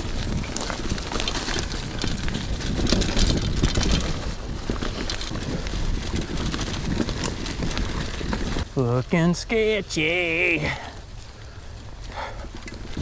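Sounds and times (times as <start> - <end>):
bike knocks and rattles: 0.0 - 8.7
wind noise on microphone: 0.0 - 8.8, 11.0 - 13.0
bike tyre rumble on dirt: 0.0 - 13.0.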